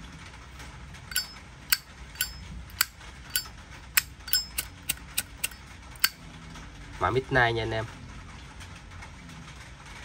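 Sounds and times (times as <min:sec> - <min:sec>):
lighter lid clicking open and shut: 0:01.1 - 0:06.2.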